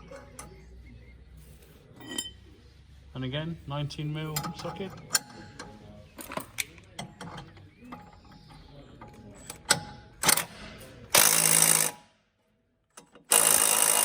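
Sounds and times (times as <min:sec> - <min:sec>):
impact wrench hammering: 0:13.2 - 0:14.0.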